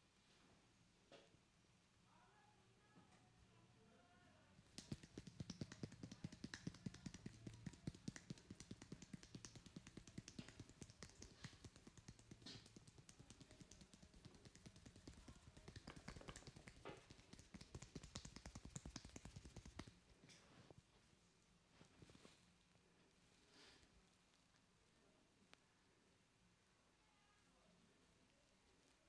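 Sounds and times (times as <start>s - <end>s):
hands patting on skin: 4.7s - 20.0s.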